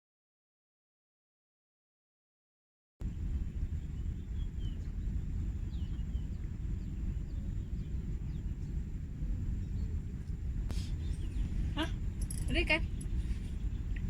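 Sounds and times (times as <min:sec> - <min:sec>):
steady low rumble: 0:03.0 - 0:14.0
faint bird chirps: 0:03.8 - 0:08.9, 0:10.7 - 0:14.0.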